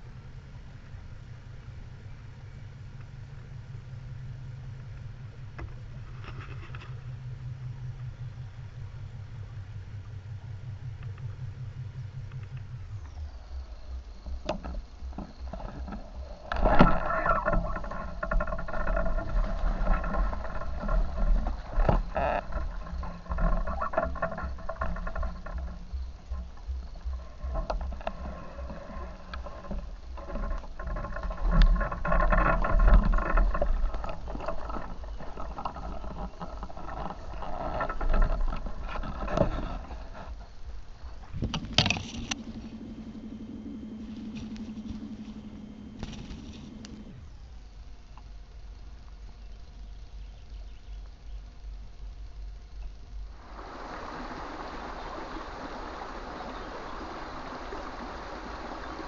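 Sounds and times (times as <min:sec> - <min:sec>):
wind rumble on microphone: 0:00.0 - 0:59.0
stream water splashing and gurgling: 0:12.7 - 0:48.1, 0:53.0 - 0:59.0.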